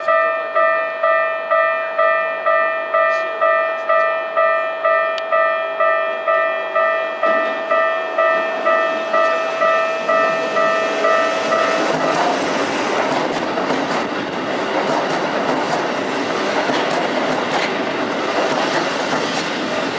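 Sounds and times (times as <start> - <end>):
level crossing bell ringing: 0.0 - 11.9
approaching train: 0.0 - 19.9.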